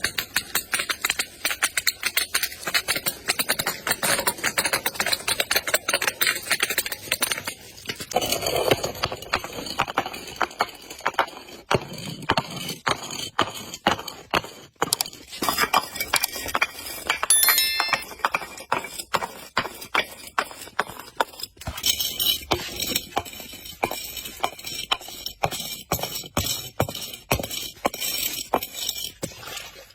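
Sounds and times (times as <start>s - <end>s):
glass clinking: 17.3s - 18.3s.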